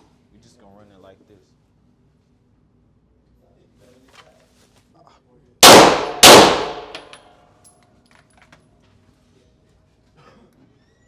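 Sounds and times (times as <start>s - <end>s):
pistol shots with echo: 5.6s - 7.2s.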